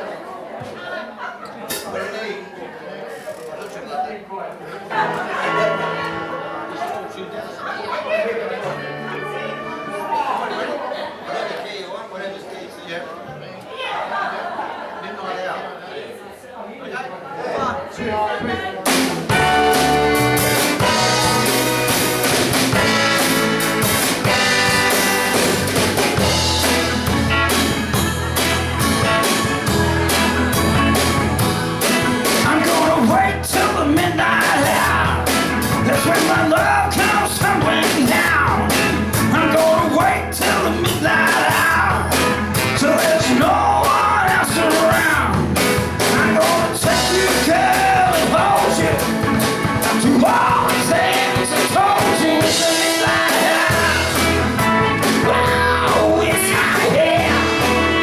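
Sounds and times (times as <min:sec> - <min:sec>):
live band playing soul music: 0:05.0 - 0:07.2, 0:08.6 - 0:10.5, 0:18.8 - 0:58.0
person singing: 0:32.2 - 0:58.0.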